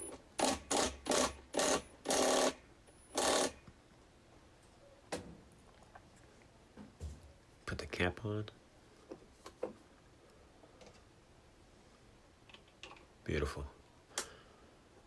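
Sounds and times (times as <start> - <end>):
torque wrench ratcheting: 0.4 - 3.6.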